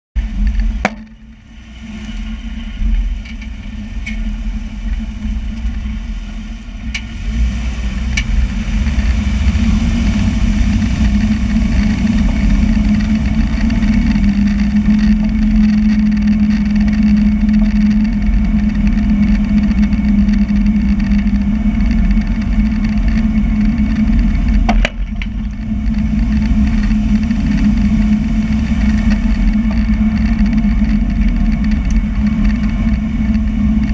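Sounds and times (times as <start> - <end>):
vehicle engine running: 0.2 - 33.9
sharp engine pops: 0.8 - 1.2.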